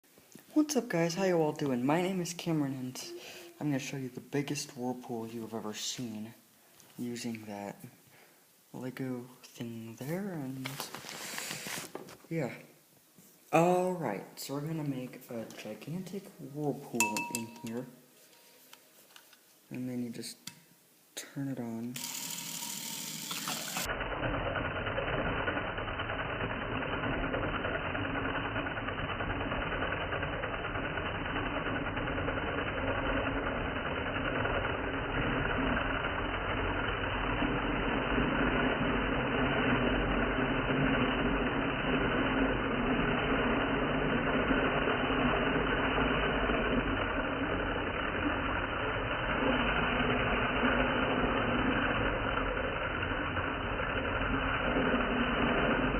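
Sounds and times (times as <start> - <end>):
small electric motor whirring: 22.0 - 55.9.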